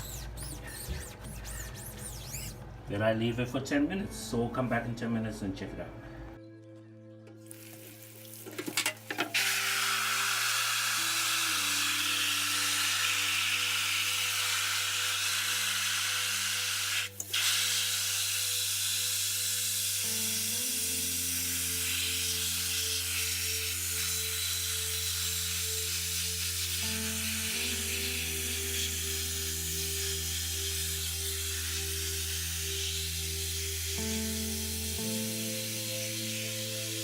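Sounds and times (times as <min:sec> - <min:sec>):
background music: 0:01.8 - 0:37.0
water jet spraying hiss: 0:09.3 - 0:37.0.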